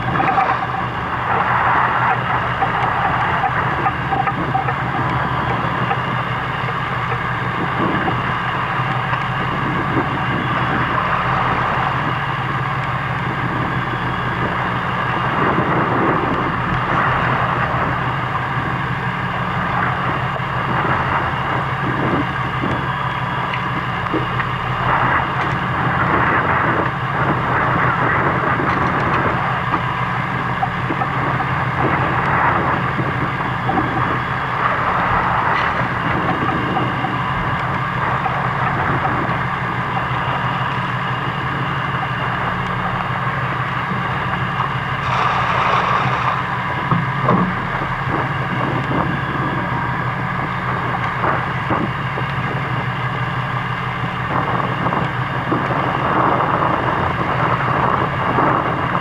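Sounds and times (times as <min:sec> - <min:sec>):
boat engine humming: 0:00.0 - 0:59.0
rushing noise: 0:45.0 - 0:48.6.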